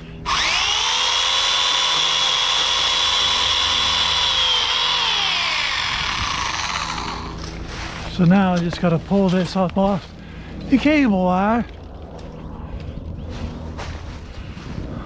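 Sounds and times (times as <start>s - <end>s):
electric chainsaw motor whine: 0.0s - 8.2s.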